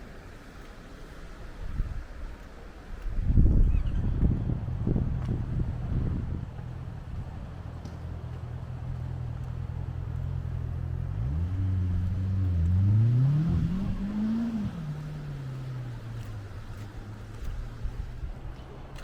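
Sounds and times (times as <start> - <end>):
engine revving: 9.9 - 18.0.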